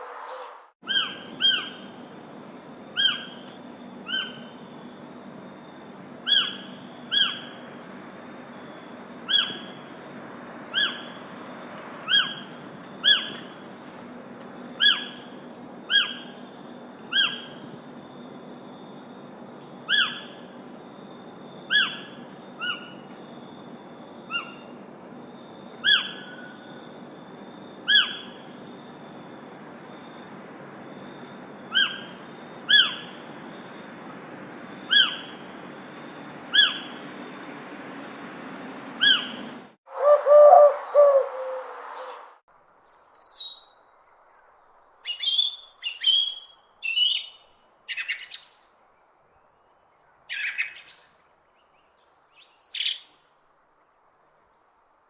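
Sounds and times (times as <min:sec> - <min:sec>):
bird short sharp call: 0:39.9 - 0:42.3.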